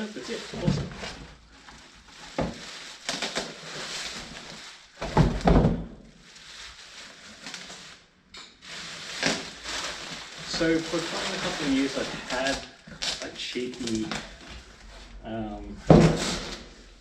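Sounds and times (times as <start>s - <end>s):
cardboard packaging rustling: 0.0s - 15.2s
heavy thump: 15.8s - 16.6s.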